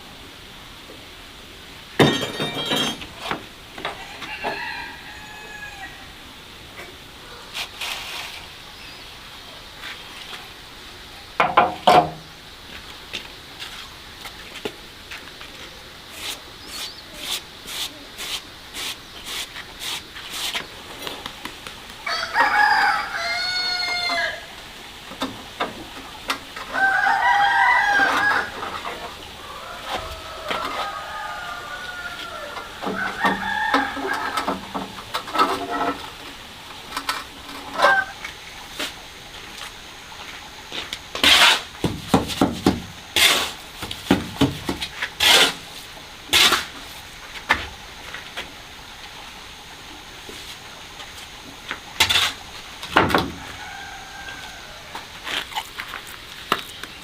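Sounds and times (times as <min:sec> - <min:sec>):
rooster crowing: 0:03.9 - 0:06.2, 0:22.0 - 0:24.5, 0:26.7 - 0:28.8, 0:29.4 - 0:34.7, 0:37.7 - 0:38.2, 0:53.2 - 0:55.2.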